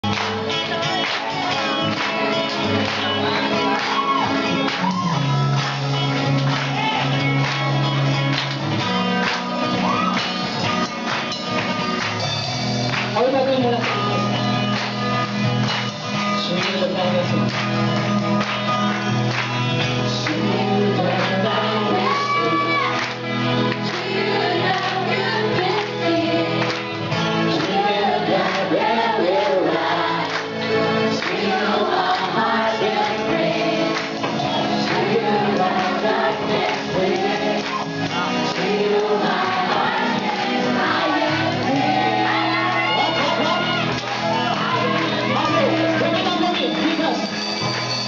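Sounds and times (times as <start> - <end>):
worship band playing: 0.0 - 48.0
group singing along: 19.9 - 46.1.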